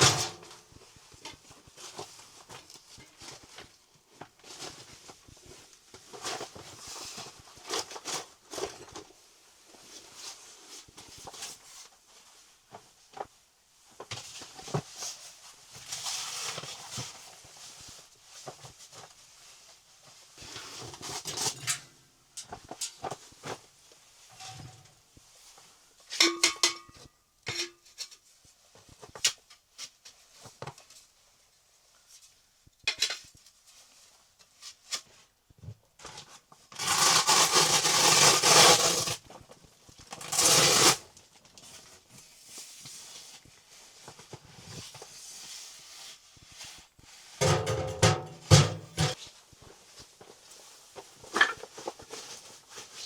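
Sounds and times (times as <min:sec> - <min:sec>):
objects knocking and clinking: 0:26.2 - 0:27.7, 0:47.4 - 0:49.2.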